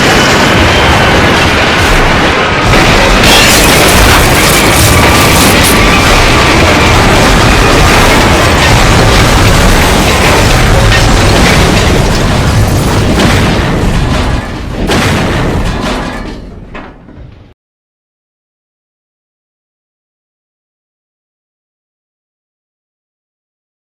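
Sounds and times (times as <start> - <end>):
loud rumbling train crash: 0.0 - 17.6.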